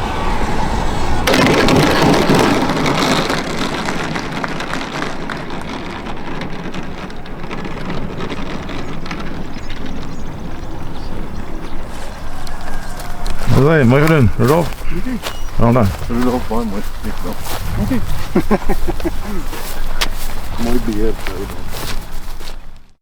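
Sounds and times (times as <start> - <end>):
two-stroke model plane engine drone: 0.0 - 13.4.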